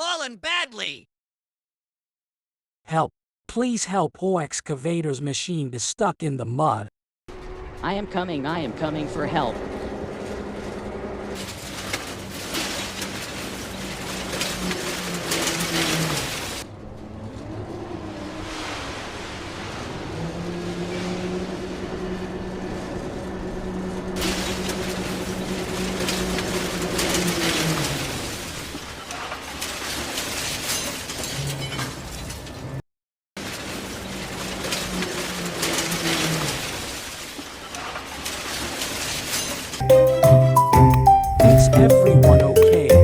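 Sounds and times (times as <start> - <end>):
vehicle engine humming: 7.3 - 15.7, 16.6 - 27.8.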